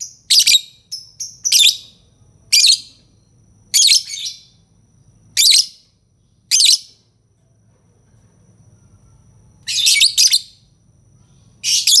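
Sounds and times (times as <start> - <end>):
lovebird shrill chattering: 9.7 - 10.5.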